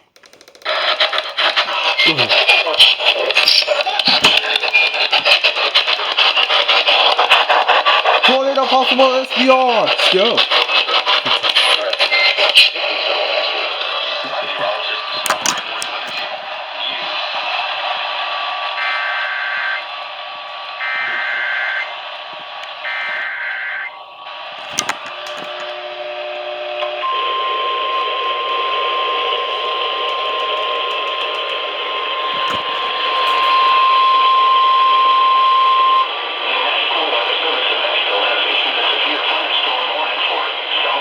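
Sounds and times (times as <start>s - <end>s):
steady warning alarm tone: 0.6s - 38.8s
static hiss: 0.7s - 36.0s
data tone bursts: 1.8s - 5.9s, 8.3s - 12.9s, 18.3s - 24.0s, 24.8s - 36.1s.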